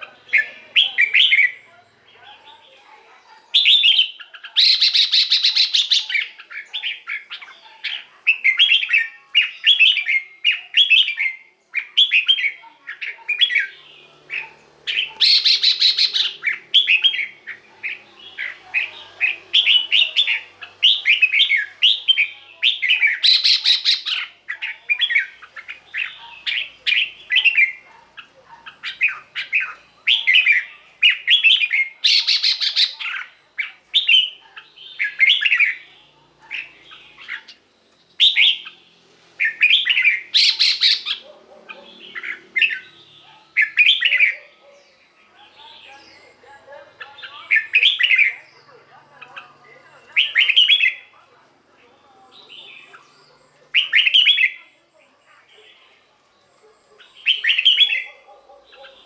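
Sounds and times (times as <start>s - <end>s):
bird chirping: 0.0s - 59.0s
harsh bird call burst: 13.9s - 17.6s, 18.2s - 24.3s, 28.8s - 35.8s, 39.4s - 41.2s.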